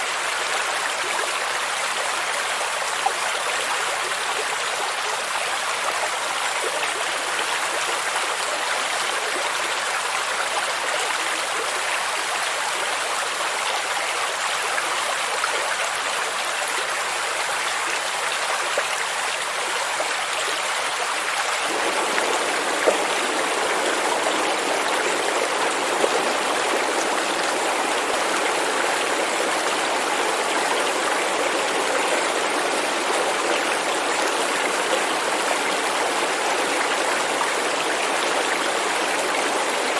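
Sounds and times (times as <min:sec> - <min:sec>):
stream water rushing and babbling: 0:00.0 - 0:39.9
faint water splashes: 0:19.1 - 0:39.9.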